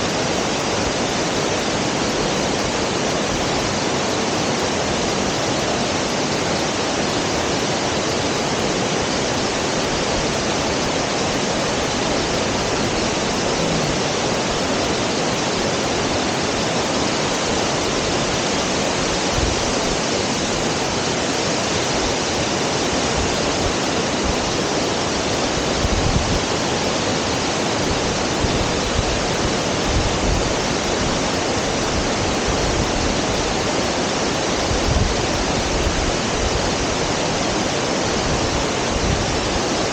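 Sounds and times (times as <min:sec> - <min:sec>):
roar of falling water: 0:12.4 - 0:15.2.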